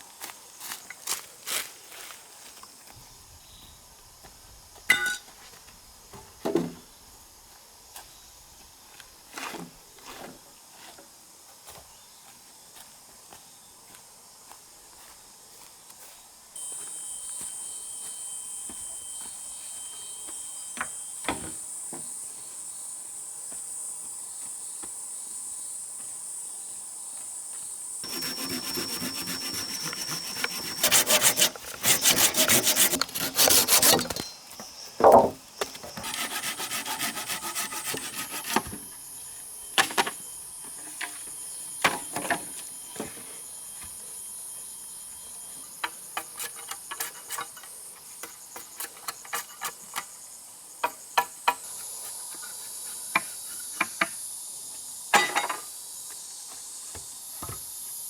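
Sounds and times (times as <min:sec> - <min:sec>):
steady high hiss: 0:16.5 - 0:48.2
saw cutting through wood: 0:28.0 - 0:34.2, 0:35.0 - 0:38.8
wood knocking and tapping: 0:35.0 - 0:35.4.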